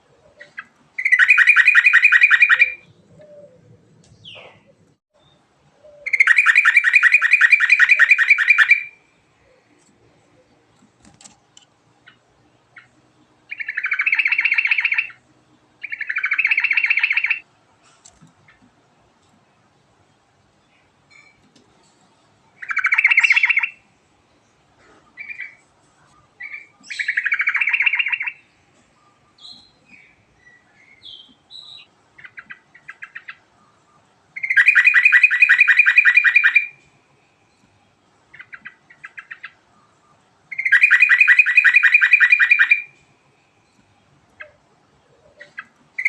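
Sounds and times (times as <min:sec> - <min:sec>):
bird chirping: 0:00.0 - 0:09.7, 0:12.0 - 0:17.4, 0:22.5 - 0:46.0.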